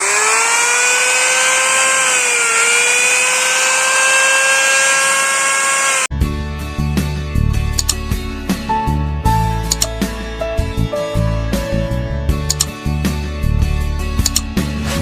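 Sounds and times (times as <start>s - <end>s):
electric router whining: 0.0s - 6.1s
music: 6.1s - 15.0s.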